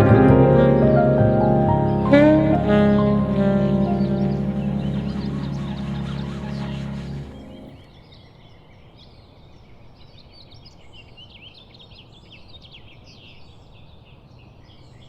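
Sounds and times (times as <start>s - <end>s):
small birds chirping: 1.6s - 8.3s.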